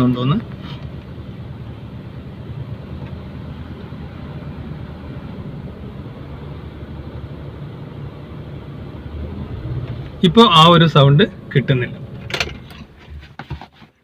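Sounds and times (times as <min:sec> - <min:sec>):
car engine running steadily: 0:00.0 - 0:14.0.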